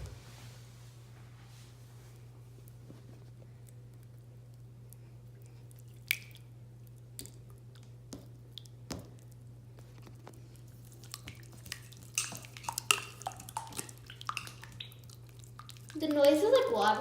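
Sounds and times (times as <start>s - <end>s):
slime wet clicks and pops: 6.0s - 6.4s.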